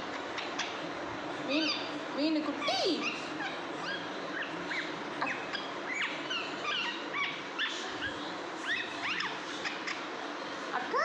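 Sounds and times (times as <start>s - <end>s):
baby parrot chirping: 0.1s - 0.8s, 1.6s - 1.9s, 2.5s - 10.1s.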